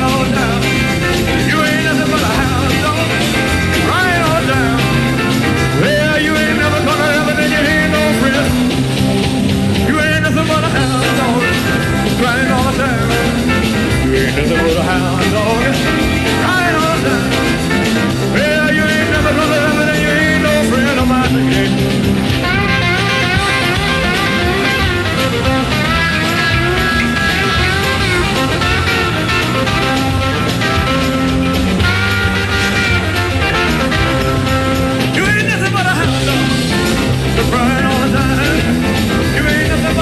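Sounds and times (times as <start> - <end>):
male lead vocal: 0.0 - 8.8, 9.8 - 22.9, 34.0 - 40.0
live rock and roll song: 0.0 - 40.0.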